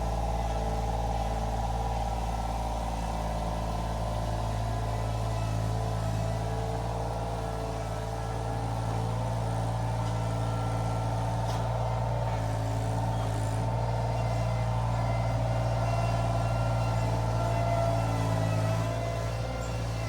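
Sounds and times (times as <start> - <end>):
skid steer engine running: 0.0 - 20.0.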